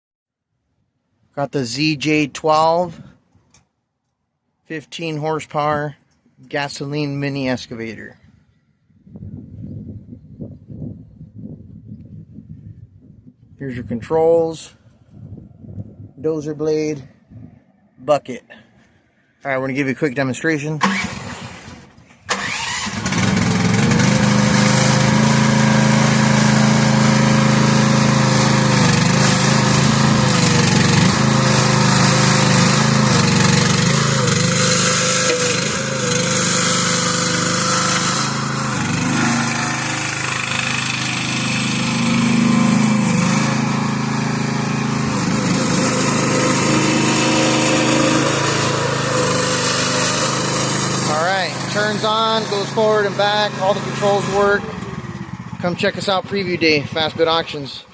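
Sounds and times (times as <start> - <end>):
excavator engine running: 20.9 - 57.6.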